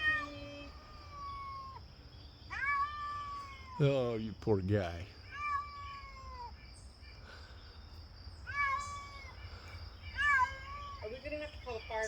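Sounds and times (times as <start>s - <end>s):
cat meowing: 0.0s - 1.8s, 2.5s - 3.9s, 5.2s - 6.6s, 8.4s - 9.4s, 10.2s - 11.3s.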